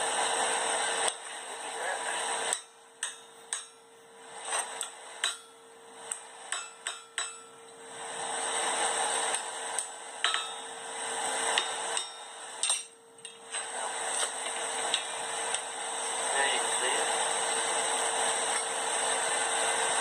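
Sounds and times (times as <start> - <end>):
steady hum: 0.0 - 20.0
hammer striking steel on anvil: 2.5 - 7.8, 9.3 - 10.8, 11.4 - 15.7.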